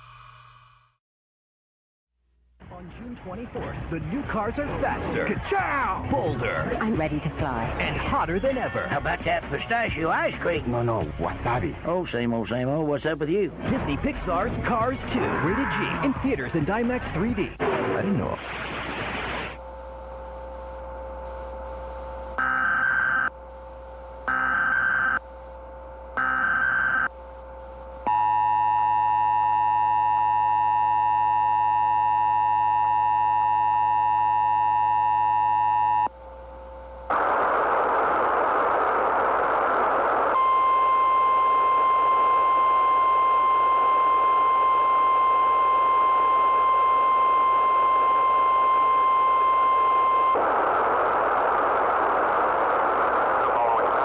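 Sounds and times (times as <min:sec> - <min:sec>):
steady warning tone: 0:03.0 - 0:18.2, 0:19.6 - 0:54.0
static hiss: 0:13.1 - 0:19.6, 0:36.6 - 0:54.0.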